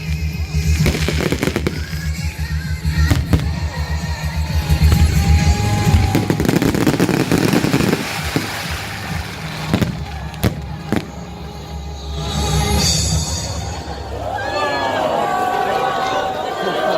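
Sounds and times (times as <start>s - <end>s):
fireworks crackling: 0.0s - 11.7s
fireworks bangs: 0.8s - 11.5s.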